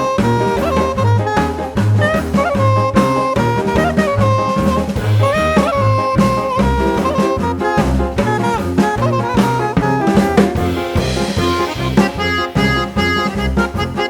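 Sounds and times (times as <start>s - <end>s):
drum kit beat: 0.0s - 14.0s
saxophone melody: 0.0s - 14.0s
upbeat jazz tune: 0.0s - 14.0s.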